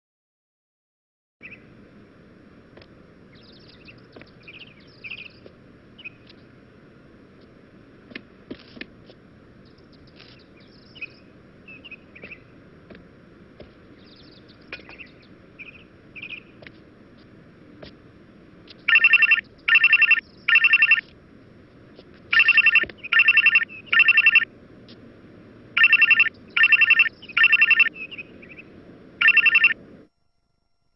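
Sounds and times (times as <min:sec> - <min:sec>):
low hiss: 0:01.4 - 0:30.1
faint chirps: 0:03.3 - 0:06.5, 0:09.6 - 0:12.6, 0:13.9 - 0:16.6, 0:18.7 - 0:21.2, 0:22.0 - 0:30.1
trilling electronic phone ring: 0:18.9 - 0:21.1, 0:22.3 - 0:24.5, 0:25.7 - 0:28.3, 0:29.2 - 0:30.0.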